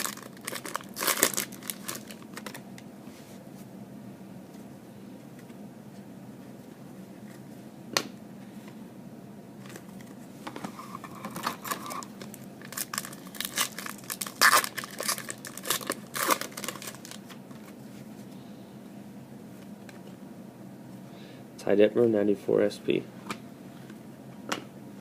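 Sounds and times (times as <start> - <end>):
foil wrapper crinkling and tearing: 0.0 - 2.6, 11.3 - 17.6.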